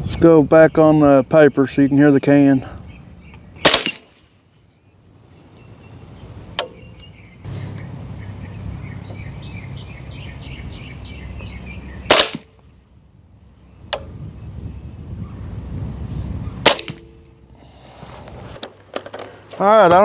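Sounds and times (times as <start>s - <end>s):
suppressed rifle shot: 3.6s - 4.2s, 12.1s - 12.6s, 16.6s - 17.1s.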